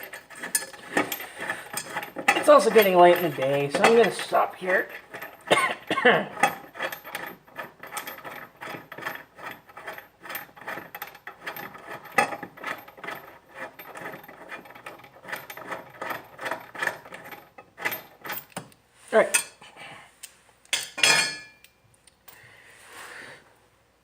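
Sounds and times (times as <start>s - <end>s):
metal scraping and rubbing: 0.0s - 18.6s
tools and metal parts clicking: 0.0s - 18.8s.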